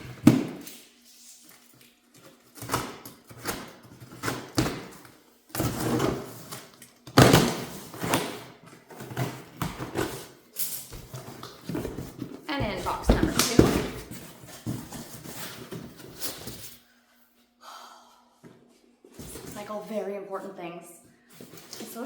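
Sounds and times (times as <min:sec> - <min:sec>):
cardboard boxes rustling and scraping: 0:11.0 - 0:16.8.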